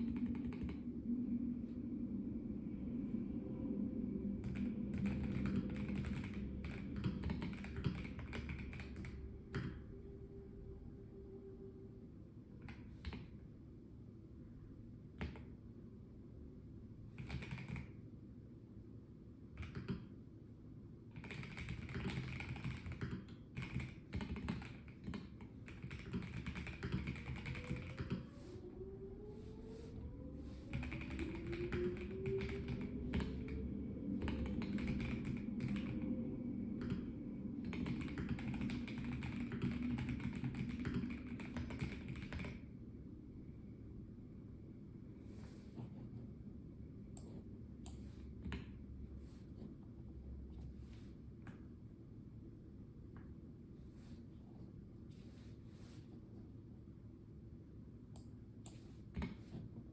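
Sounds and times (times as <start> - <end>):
mechanical keyboard typing: 0.0 - 0.8, 4.4 - 9.8, 17.2 - 17.9, 19.6 - 20.0, 21.1 - 28.3, 30.7 - 33.6, 34.2 - 36.0, 36.8 - 42.6
low background rumble: 0.0 - 59.9.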